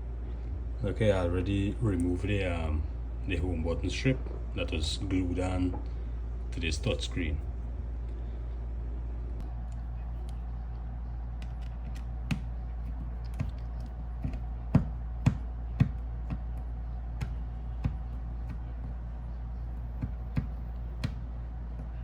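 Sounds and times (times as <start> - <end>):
low hum: 0.0 - 22.0.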